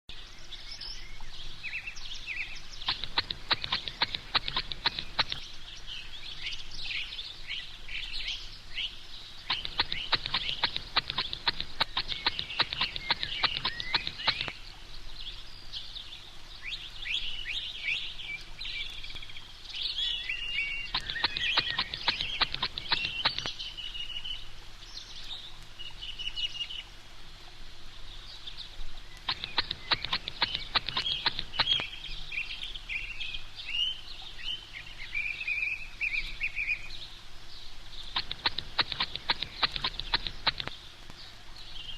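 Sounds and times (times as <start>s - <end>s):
rapid clicking: 2.9s - 5.4s, 9.5s - 14.6s, 20.9s - 23.6s, 29.2s - 31.9s, 38.2s - 40.8s.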